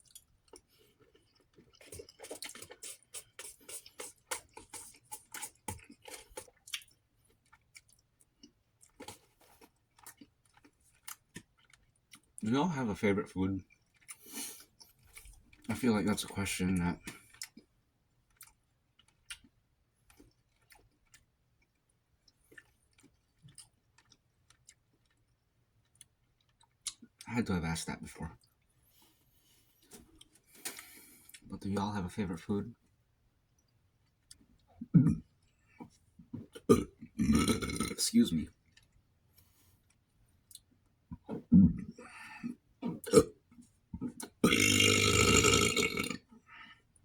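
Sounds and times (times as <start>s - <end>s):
wet chewing mouth smacks: 0.0s - 8.0s
faint wet chewing: 0.0s - 12.4s, 13.6s - 27.2s, 28.4s - 31.5s, 32.8s - 47.0s.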